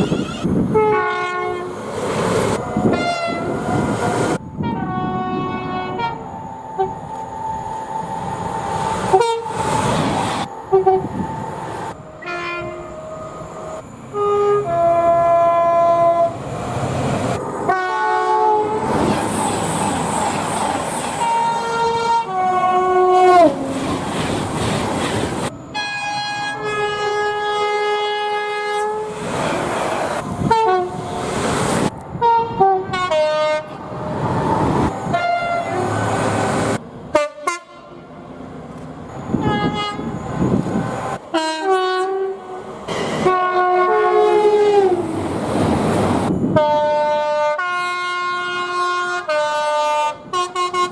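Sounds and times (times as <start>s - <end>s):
train horns chord: 0.0s - 1.8s, 2.8s - 3.8s, 4.5s - 7.0s, 9.0s - 9.7s, 10.7s - 11.2s, 12.1s - 16.4s, 17.6s - 18.9s, 21.2s - 23.8s, 25.7s - 29.2s, 30.4s - 31.2s, 32.2s - 33.8s, 35.1s - 36.0s, 37.1s - 38.2s, 39.3s - 40.2s, 41.3s - 42.6s, 43.2s - 45.1s, 46.5s - 50.9s
running train noise: 0.0s - 50.9s.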